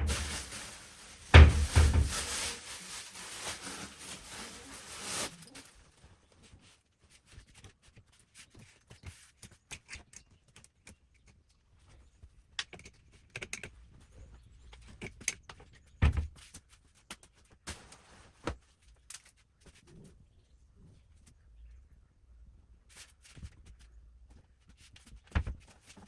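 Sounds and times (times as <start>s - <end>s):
heavy thump: 1.3s - 2.3s
objects being handled clicking: 7.4s - 11.6s, 12.2s - 13.8s, 14.7s - 17.5s.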